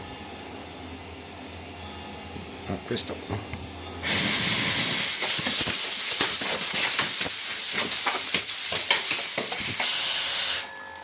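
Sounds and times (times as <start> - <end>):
compressed air hissing: 4.0 - 10.7.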